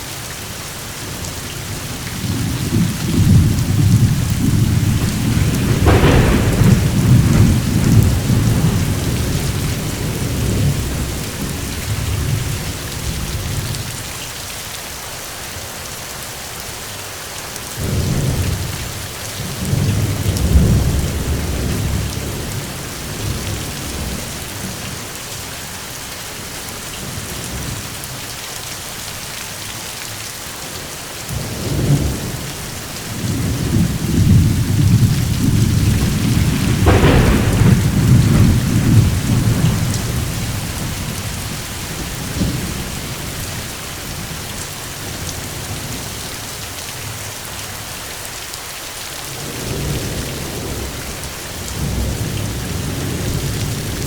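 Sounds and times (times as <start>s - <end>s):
steady rain: 0.0s - 54.0s
rolling thunder: 1.5s - 14.0s, 17.8s - 25.0s, 31.3s - 46.2s, 49.4s - 54.0s
thunder crack: 1.9s - 13.6s, 19.4s - 24.4s, 31.4s - 44.5s.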